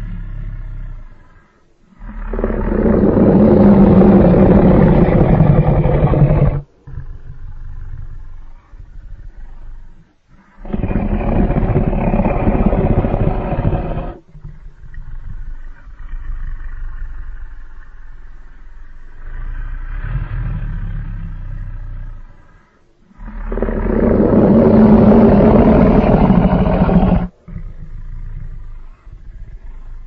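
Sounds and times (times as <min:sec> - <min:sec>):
monster roaring: 0:02.2 - 0:06.6, 0:10.6 - 0:14.2, 0:23.2 - 0:27.3.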